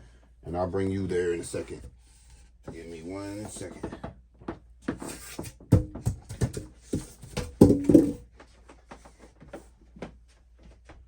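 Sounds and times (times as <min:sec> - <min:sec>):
equipment knocks and clatters: 0:05.6 - 0:08.2.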